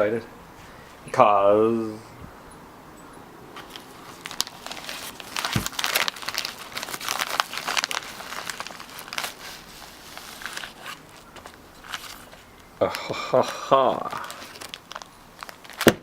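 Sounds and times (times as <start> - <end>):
crinkly packaging being unwrapped: 3.6 - 16.0.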